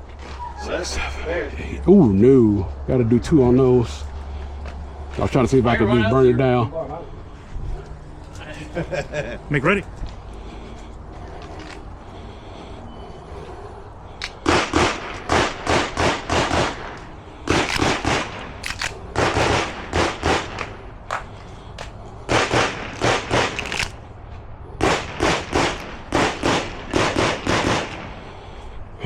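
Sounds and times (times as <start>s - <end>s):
rapid handgun fire: 14.3s - 20.9s, 22.3s - 24.0s, 24.8s - 28.4s.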